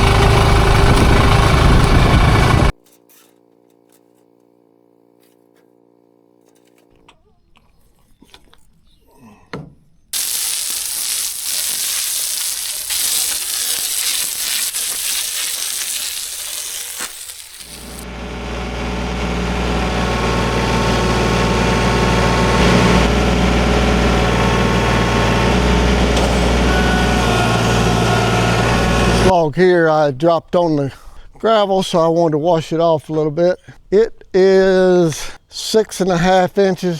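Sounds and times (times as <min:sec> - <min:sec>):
small engine humming: 0:00.0 - 0:02.7, 0:15.4 - 0:29.3
water spray hissing: 0:10.2 - 0:18.0.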